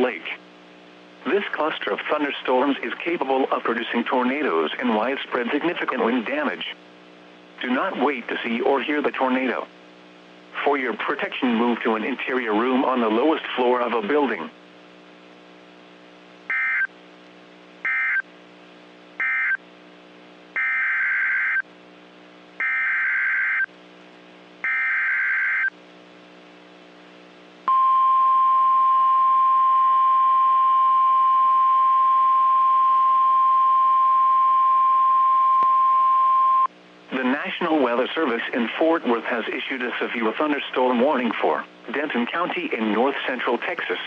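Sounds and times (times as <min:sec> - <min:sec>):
low steady hum: 0:00.0 - 0:44.0
steady warning alarm tone: 0:16.5 - 0:16.9, 0:17.9 - 0:18.2, 0:19.2 - 0:19.6, 0:20.6 - 0:21.6, 0:22.6 - 0:23.7, 0:24.6 - 0:25.7.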